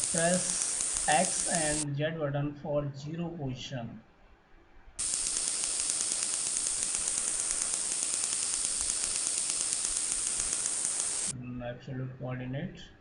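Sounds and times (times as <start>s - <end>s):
lathe machine hiss and ticking: 0.0s - 1.8s, 5.0s - 11.3s.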